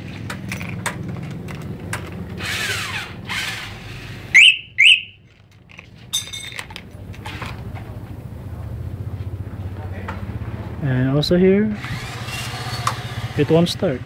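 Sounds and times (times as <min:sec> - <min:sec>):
low mechanical drone: 0:00.0 - 0:05.8
motorcycle alarm chirps: 0:04.4 - 0:05.2.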